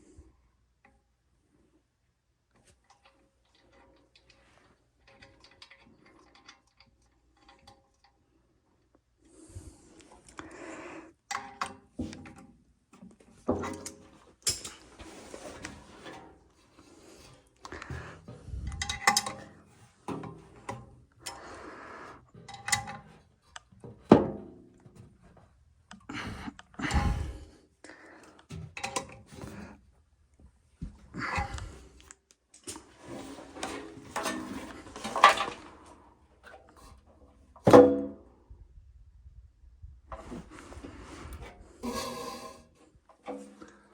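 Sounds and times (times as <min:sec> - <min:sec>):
metal parts clunking and scraping: 0:13.1 - 0:25.1, 0:31.2 - 0:37.1, 0:40.2 - 0:43.9.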